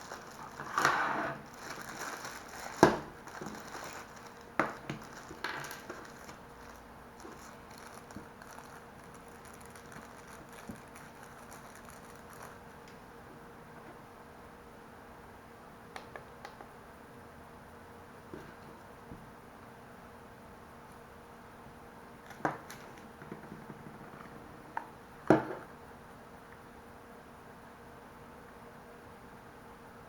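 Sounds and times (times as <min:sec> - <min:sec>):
crinkling rustle: 0:00.0 - 0:13.0.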